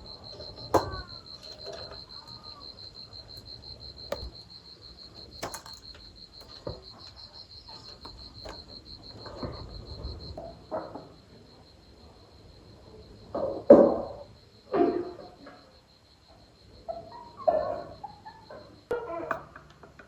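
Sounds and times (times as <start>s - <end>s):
insect trilling: 0.0s - 13.2s, 14.2s - 19.3s
sharp knocks: 4.1s - 4.4s.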